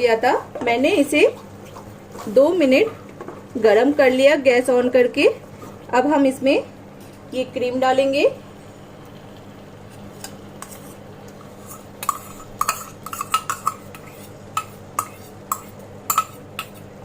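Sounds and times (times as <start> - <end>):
metal spoon clinking on cookware: 12.0 - 16.8.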